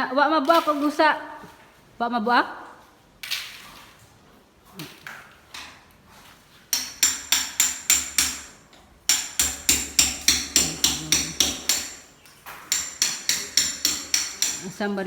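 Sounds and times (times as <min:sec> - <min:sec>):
hammer ringing on metal chisel: 0:06.8 - 0:12.1, 0:12.7 - 0:14.8.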